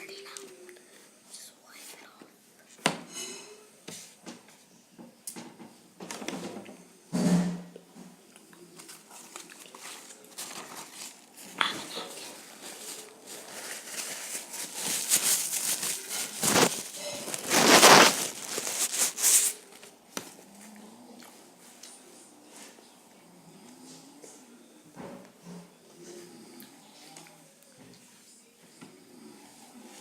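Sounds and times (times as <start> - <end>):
rustling and crinkling: 8.7 - 20.8.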